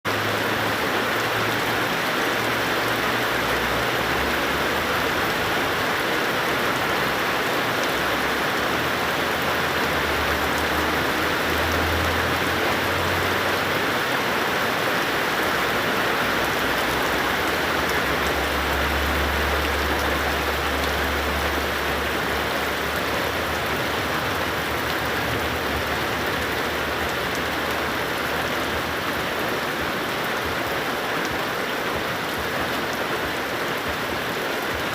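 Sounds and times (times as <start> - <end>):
heavy rain falling: 0.0 - 34.9.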